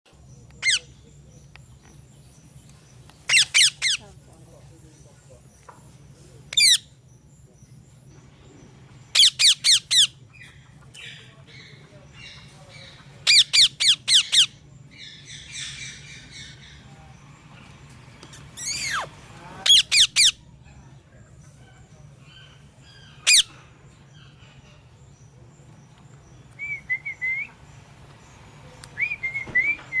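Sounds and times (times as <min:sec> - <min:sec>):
parrot shrill calls: 0:03.3 - 0:04.0, 0:09.1 - 0:10.2, 0:18.6 - 0:19.1, 0:19.7 - 0:20.4, 0:23.2 - 0:23.5.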